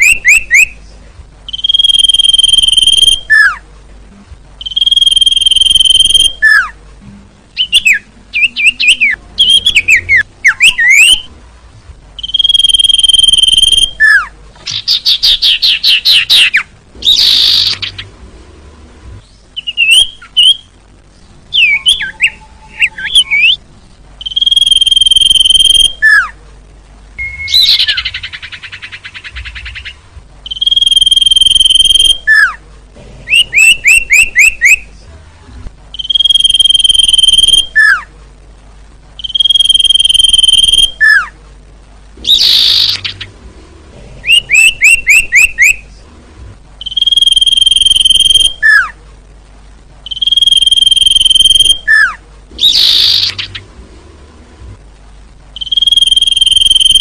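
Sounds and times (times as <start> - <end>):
bird song whistles: 0.0 - 0.8, 1.5 - 3.6, 4.6 - 6.7, 7.6 - 11.3, 12.2 - 17.9, 19.6 - 20.7, 21.5 - 23.6, 24.2 - 26.3, 27.2 - 32.6, 33.3 - 34.8, 36.0 - 38.1, 39.2 - 41.3, 42.2 - 43.2, 44.3 - 45.8, 46.8 - 48.9, 50.1 - 53.6, 55.6 - 57.0
harsh buzzy bird chatter: 12.2 - 18.1, 42.2 - 43.4, 50.1 - 53.7.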